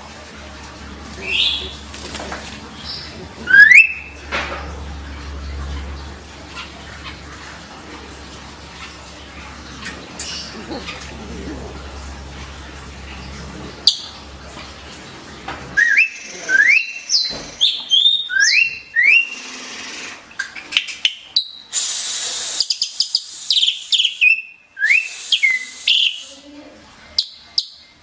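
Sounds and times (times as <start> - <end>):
harsh rasping bird chatter: 0.7 - 4.3, 8.7 - 15.0
starling whistling song: 2.9 - 4.2, 15.8 - 19.6, 20.8 - 26.4.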